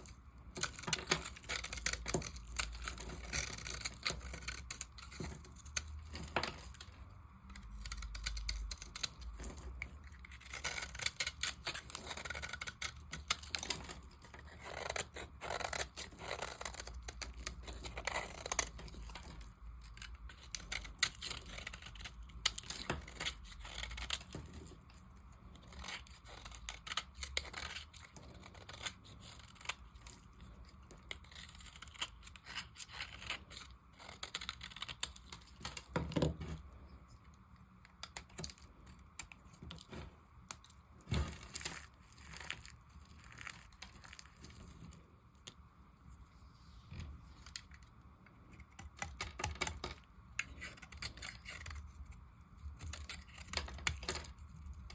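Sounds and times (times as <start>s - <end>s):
blade carving dry soap: 0.0s - 45.0s, 47.4s - 54.9s.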